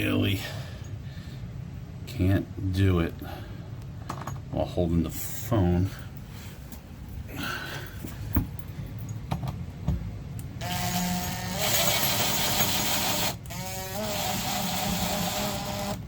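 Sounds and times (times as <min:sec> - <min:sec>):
power drill motor whine: 0:10.6 - 0:16.0.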